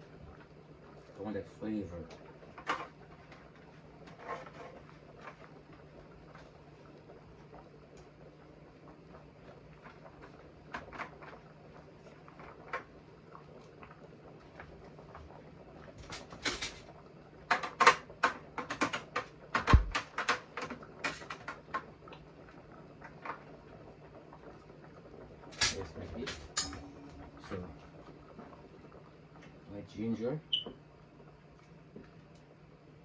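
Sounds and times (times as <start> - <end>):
utensils and cookware clattering: 16.1 - 16.8, 25.6 - 27.0
heavy thump: 19.7 - 20.0.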